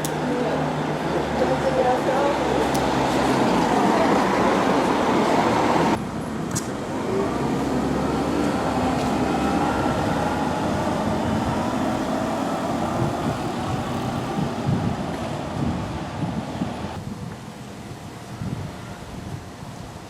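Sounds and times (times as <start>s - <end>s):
vehicle running: 0.0s - 17.0s.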